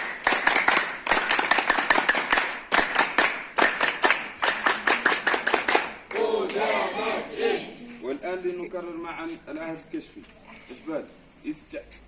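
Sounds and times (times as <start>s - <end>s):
group clapping in unison: 0.0s - 7.3s.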